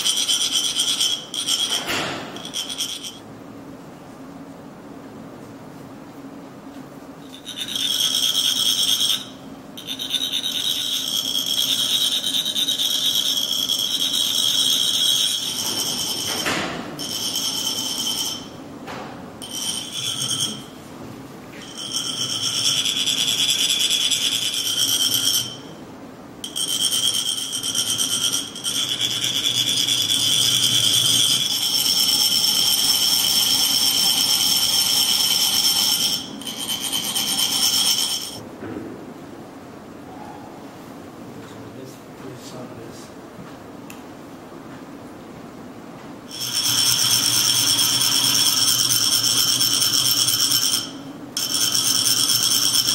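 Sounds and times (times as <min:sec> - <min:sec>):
metal funnels rasping: 0:00.0 - 0:03.2, 0:07.2 - 0:18.6, 0:19.4 - 0:20.8, 0:21.6 - 0:25.6, 0:26.4 - 0:38.4, 0:46.3 - 0:52.9.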